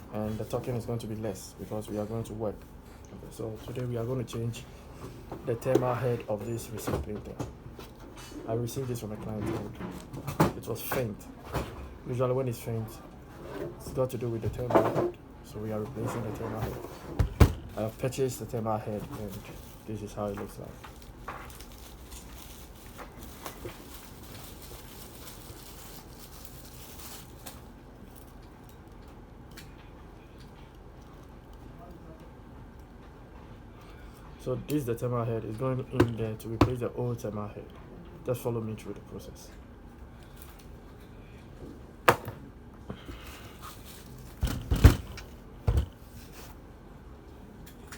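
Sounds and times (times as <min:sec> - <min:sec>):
rustling: 0:18.9 - 0:28.3, 0:43.1 - 0:46.6.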